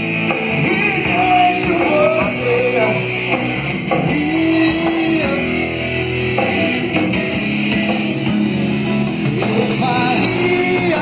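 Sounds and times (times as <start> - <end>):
band playing instrumental: 0.0 - 11.0
guitar: 0.0 - 11.0
person singing: 0.5 - 3.2, 3.9 - 5.9, 9.2 - 11.0.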